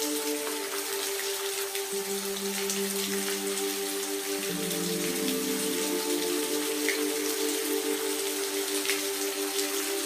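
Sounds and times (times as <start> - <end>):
soft sustained music notes: 0.0 - 10.0
steady rain: 0.0 - 10.0.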